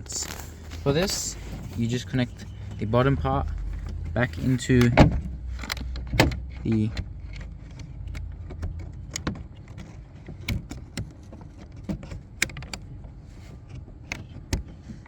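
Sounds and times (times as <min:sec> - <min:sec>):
low rumble: 0:00.0 - 0:09.1.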